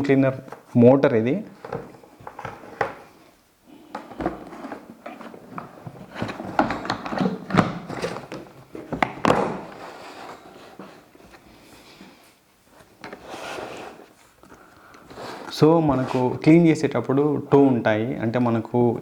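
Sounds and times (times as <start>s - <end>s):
vacuum cleaner parts tapping: 1.6s - 3.0s, 3.9s - 10.9s.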